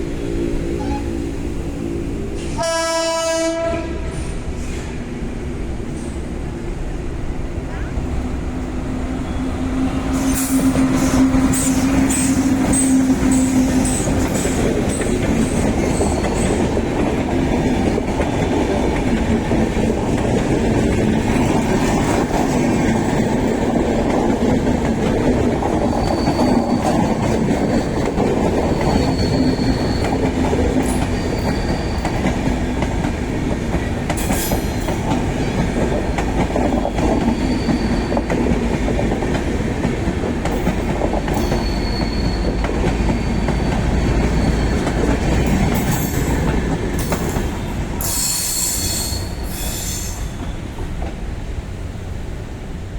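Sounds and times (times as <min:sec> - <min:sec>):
passing train rumble: 0:00.0 - 0:52.9
high-pitched wheel squeals: 0:00.7 - 0:01.2, 0:25.8 - 0:32.3, 0:37.2 - 0:38.3, 0:41.3 - 0:46.4, 0:48.0 - 0:50.6
wheels clicking over rail joints: 0:10.7 - 0:48.6.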